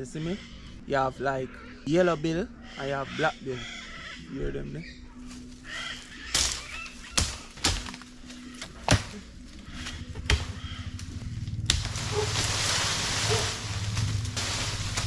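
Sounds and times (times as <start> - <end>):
parrots squawking: 0.0 - 7.6, 8.3 - 15.0
sharp chopping strikes: 6.3 - 9.2, 9.8 - 10.6, 11.6 - 15.0
steady rushing noise: 10.9 - 15.0.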